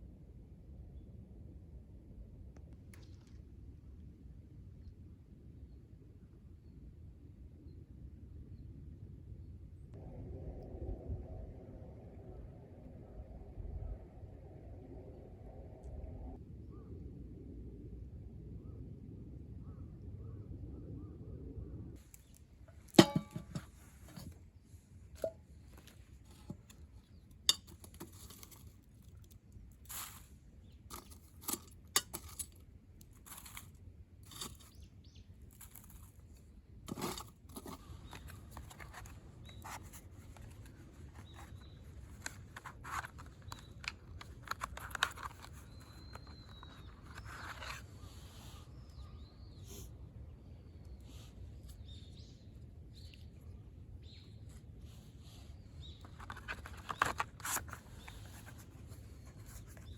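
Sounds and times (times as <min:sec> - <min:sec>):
faint bird chirps: 0:19.6 - 0:22.4, 0:45.4 - 0:57.2.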